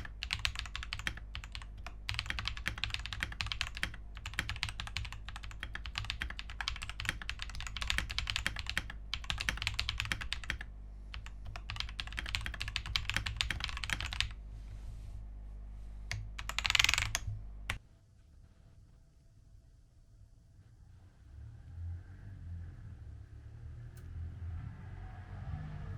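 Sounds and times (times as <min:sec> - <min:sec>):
mechanical keyboard typing: 0:00.0 - 0:14.4, 0:16.1 - 0:17.8.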